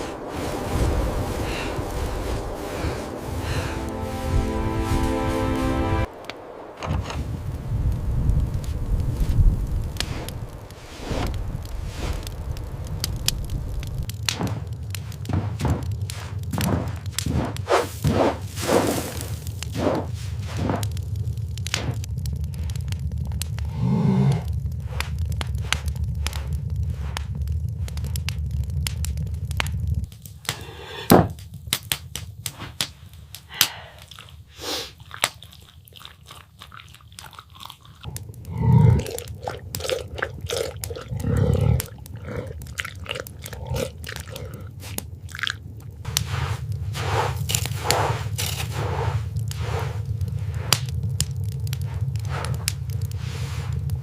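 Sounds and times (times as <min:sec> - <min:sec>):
low rumble: 0:00.0 - 0:30.8, 0:38.0 - 0:54.0
wood fire crackling: 0:00.0 - 0:54.0
animal chewing: 0:34.0 - 0:52.8.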